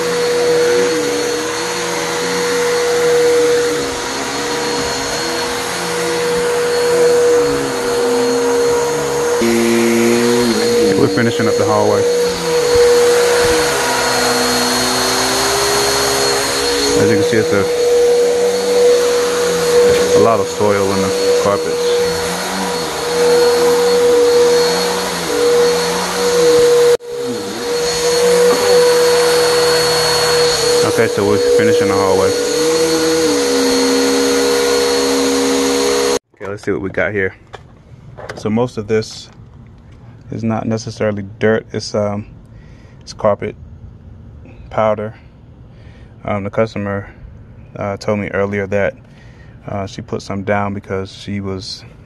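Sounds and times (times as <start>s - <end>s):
vacuum cleaner running: 0.0s - 36.3s.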